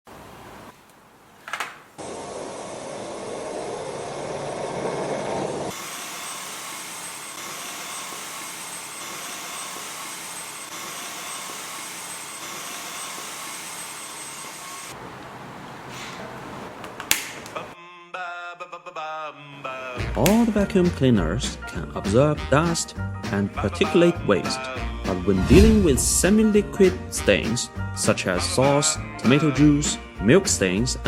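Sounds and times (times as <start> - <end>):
vacuum cleaner running: 2.0 - 17.7.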